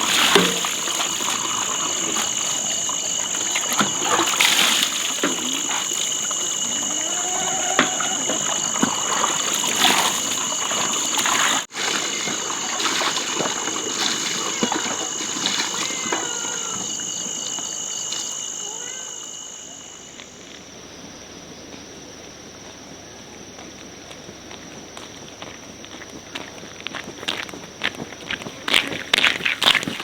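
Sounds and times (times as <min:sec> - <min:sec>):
water splashes: 0:00.0 - 0:18.4
insects shrilling: 0:00.0 - 0:20.2.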